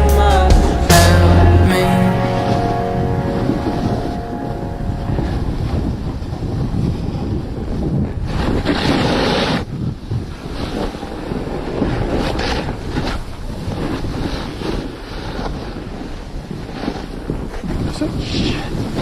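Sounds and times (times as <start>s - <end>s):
wind buffeting microphone: 2.6s - 19.0s
skis scraping over snow: 7.1s - 19.0s.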